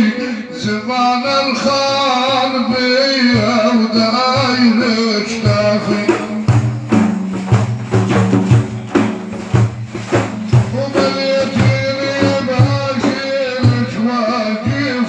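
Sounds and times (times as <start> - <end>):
frame drum beat: 3.3 - 15.0.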